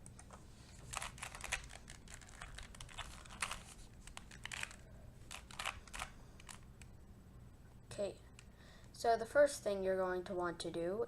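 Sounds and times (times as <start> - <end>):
plastic puzzle cube clicking: 0.9 - 6.6.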